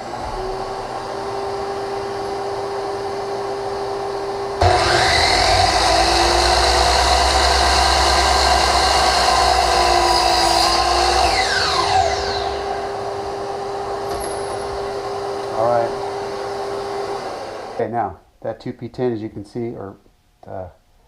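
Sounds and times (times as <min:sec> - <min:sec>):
saw blade spinning down whine: 0:00.0 - 0:17.8
steady hum: 0:00.0 - 0:18.3
miter saw motor running: 0:04.6 - 0:17.8.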